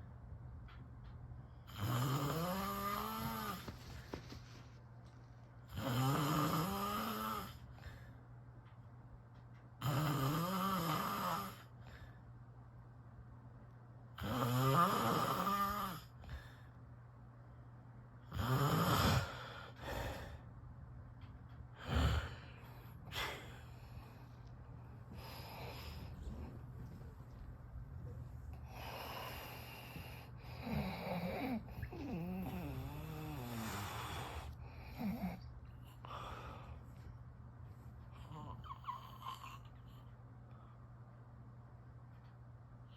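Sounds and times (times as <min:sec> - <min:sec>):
person snoring: 0:01.7 - 0:04.3, 0:05.7 - 0:07.6, 0:09.8 - 0:11.7, 0:14.2 - 0:16.2, 0:18.3 - 0:20.3, 0:21.8 - 0:22.6, 0:28.6 - 0:35.4.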